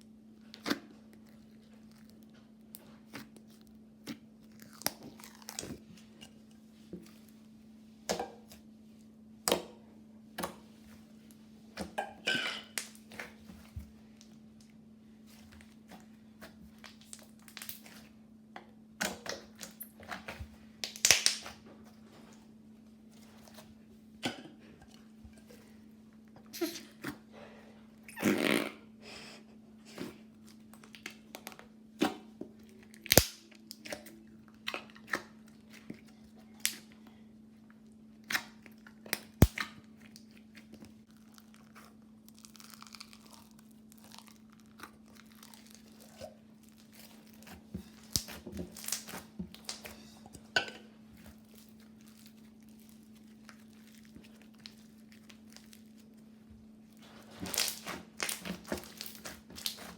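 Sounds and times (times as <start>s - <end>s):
slime squishing and popping: 16.7s - 18.0s, 20.8s - 21.6s, 32.9s - 34.0s, 38.2s - 49.9s, 57.3s - 59.9s.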